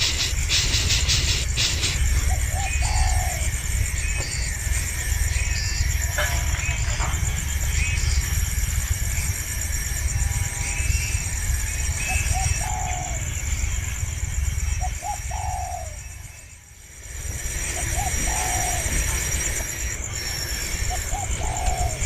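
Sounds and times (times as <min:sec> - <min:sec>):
bird cooing: 0:00.0 - 0:03.7, 0:12.0 - 0:13.4, 0:14.7 - 0:16.5, 0:17.2 - 0:22.0.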